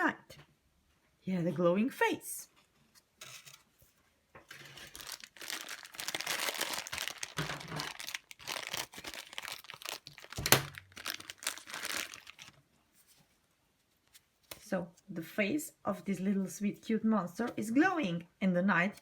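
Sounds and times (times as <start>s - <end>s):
plastic packaging crinkling: 4.5s - 12.7s.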